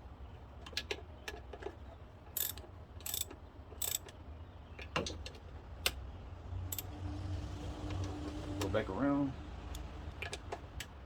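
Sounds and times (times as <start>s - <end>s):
socket ratchet clicking: 2.4s - 4.0s.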